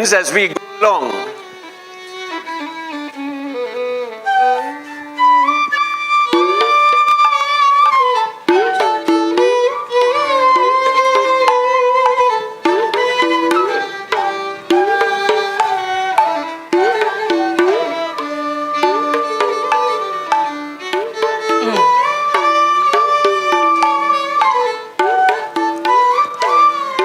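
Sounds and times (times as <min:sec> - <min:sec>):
violin melody with slides: 0:00.0 - 0:27.0
hand drum strokes: 0:06.3 - 0:07.4, 0:08.4 - 0:27.0.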